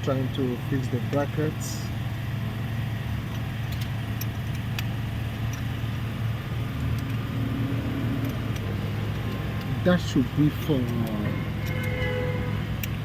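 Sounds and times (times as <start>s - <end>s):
engine idling: 0.0s - 13.0s
light clicks: 8.2s - 9.8s.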